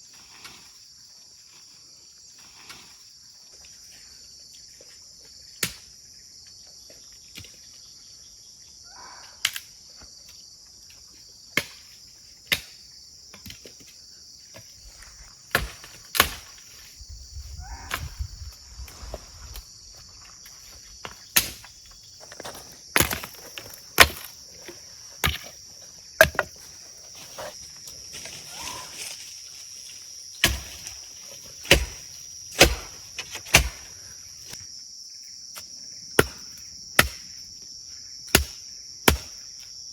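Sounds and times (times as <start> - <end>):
crickets chirping: 0.0 - 39.9
sharp chopping strikes: 15.5 - 16.5, 21.4 - 21.6, 30.4 - 30.9, 31.6 - 33.9, 36.2 - 37.2, 38.3 - 39.4.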